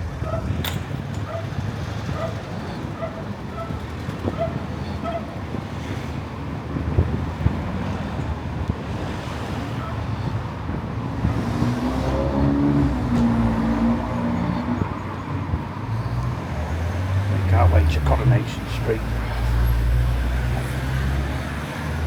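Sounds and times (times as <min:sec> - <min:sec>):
traffic rumble of passing cars: 0:00.0 - 0:22.0
vehicle engine passing close: 0:11.2 - 0:22.0.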